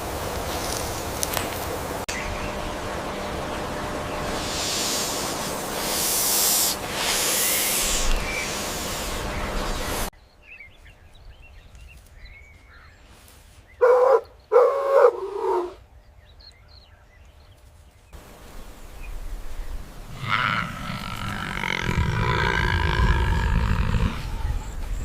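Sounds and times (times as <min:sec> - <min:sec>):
hiss: 0:00.0 - 0:02.1, 0:04.1 - 0:10.1
faint chirping: 0:02.1 - 0:17.8
animal crying: 0:13.8 - 0:15.8, 0:20.1 - 0:24.8.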